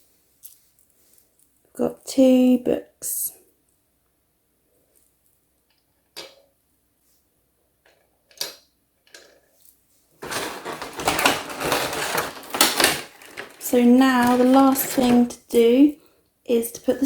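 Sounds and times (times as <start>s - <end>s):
toy pieces rustling and clattering: 9.2s - 15.8s
plastic toy pieces clicking: 10.2s - 15.6s.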